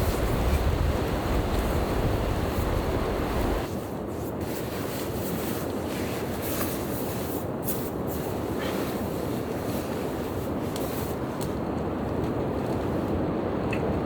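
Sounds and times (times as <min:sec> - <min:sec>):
snowstorm wind: 0:00.0 - 0:14.0.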